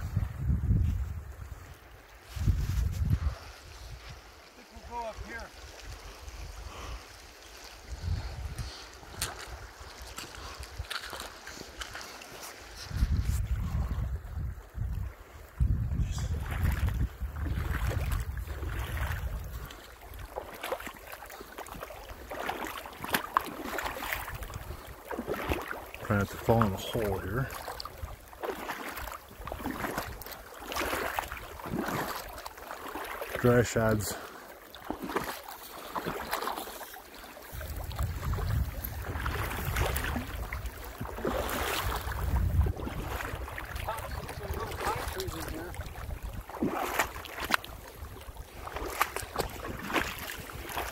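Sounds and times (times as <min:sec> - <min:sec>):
wind buffeting microphone: 0:00.0 - 0:04.3, 0:07.8 - 0:11.0, 0:12.8 - 0:20.3, 0:37.5 - 0:50.9
footsteps crunching through snow: 0:02.2 - 0:03.8.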